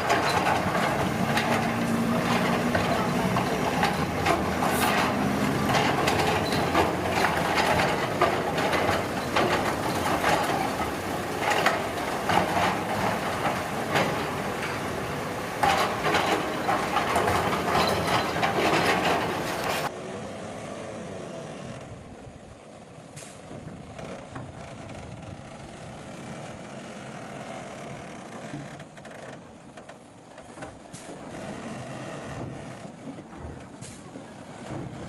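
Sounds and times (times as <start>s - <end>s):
metallic knocks and clanks: 0.0s - 19.9s
construction machinery engine drone: 0.0s - 35.0s.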